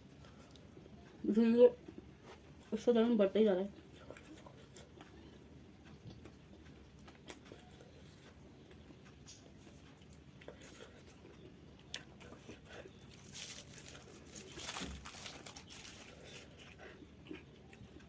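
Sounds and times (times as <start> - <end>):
rustling and crinkling: 12.2 - 18.0.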